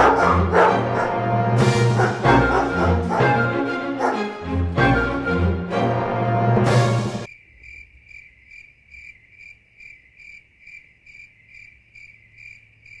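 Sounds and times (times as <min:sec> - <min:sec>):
music: 0:00.0 - 0:07.3
cricket chirping: 0:07.3 - 0:13.0.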